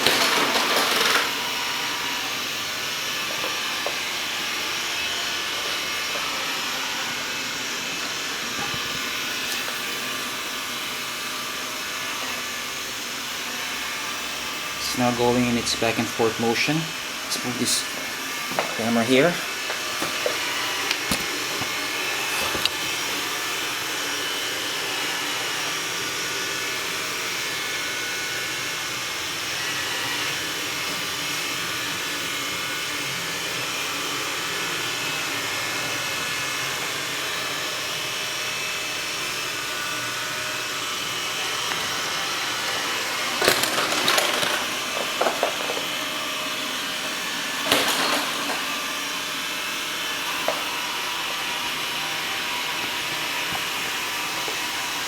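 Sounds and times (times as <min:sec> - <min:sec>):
robot vacuum whirring: 0:00.0 - 0:55.0
knocks and clatters: 0:43.4 - 0:45.9.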